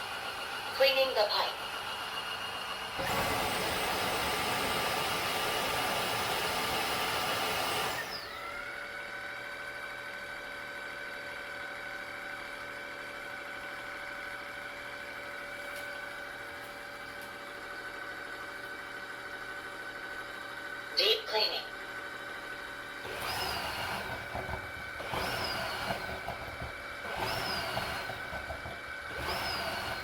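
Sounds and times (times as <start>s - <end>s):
vacuum motor whining: 0.0s - 12.4s, 22.0s - 30.0s.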